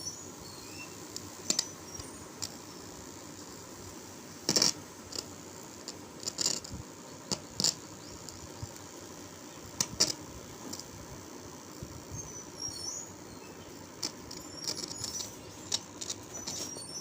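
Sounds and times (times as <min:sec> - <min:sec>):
background hiss: 0:00.0 - 0:17.0
small objects clicking and rustling: 0:14.0 - 0:17.0.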